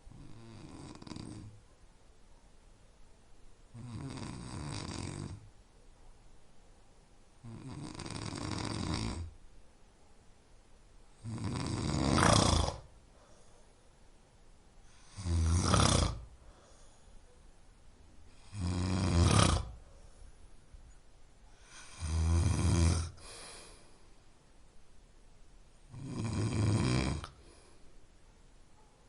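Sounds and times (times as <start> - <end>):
person snoring: 0.1 - 1.6, 3.7 - 5.5, 7.4 - 9.3, 11.2 - 12.9, 14.9 - 16.4, 18.3 - 19.8, 21.6 - 23.9, 25.9 - 27.7
quiet breathing: 11.0 - 24.8, 27.1 - 29.0.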